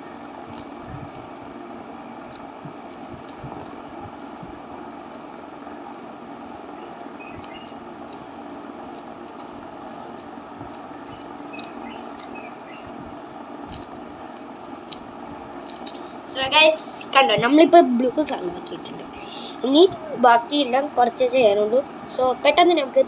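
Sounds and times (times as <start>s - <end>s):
steady background hum: 0.0s - 23.0s
puzzle cube plastic clicks: 0.5s - 0.7s, 2.3s - 4.4s, 5.1s - 6.6s, 7.3s - 8.2s, 8.8s - 9.5s, 10.1s - 12.4s, 13.7s - 15.0s, 15.6s - 16.0s.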